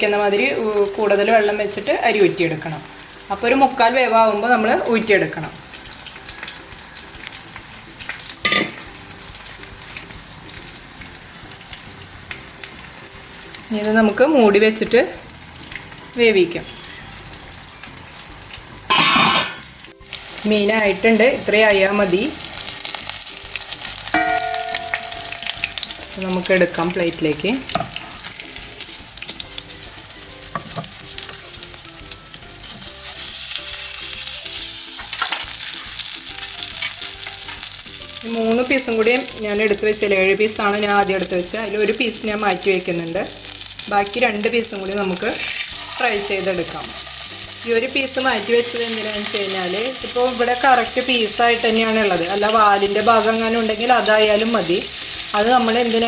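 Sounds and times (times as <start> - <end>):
fish sizzling in oil: 0.0 - 56.0.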